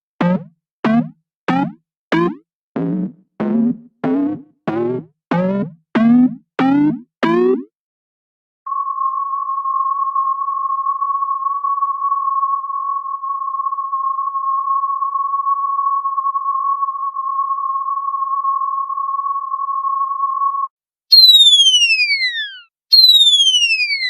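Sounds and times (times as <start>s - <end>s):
long steady electronic beep: 8.7s - 24.0s.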